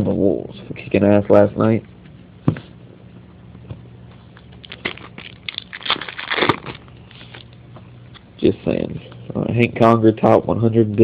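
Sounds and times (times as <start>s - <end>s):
steady low hum: 0.0s - 11.0s
foil wrapper crinkling: 4.4s - 7.6s.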